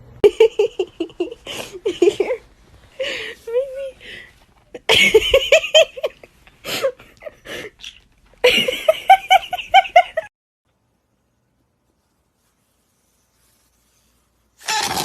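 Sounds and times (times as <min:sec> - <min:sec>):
person laughing: 0:00.2 - 0:02.4, 0:08.4 - 0:10.3.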